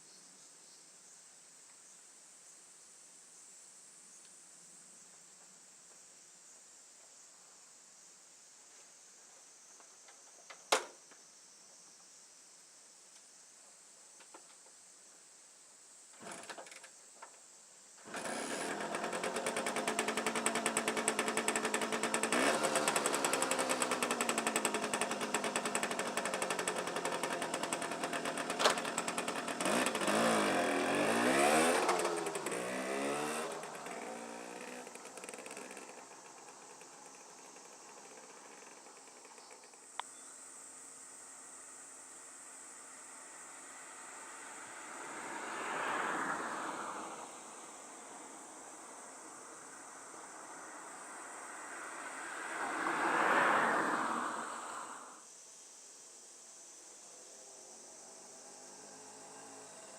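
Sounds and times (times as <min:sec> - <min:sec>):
small engine revving: 0:16.2 - 0:16.8, 0:18.0 - 0:39.8, 0:42.8 - 0:55.2, 0:58.0 - 0:59.9.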